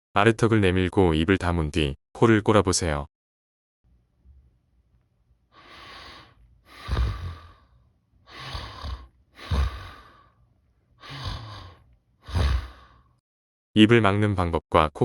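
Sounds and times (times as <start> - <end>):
person snoring: 5.5 - 10.4, 11.0 - 13.2.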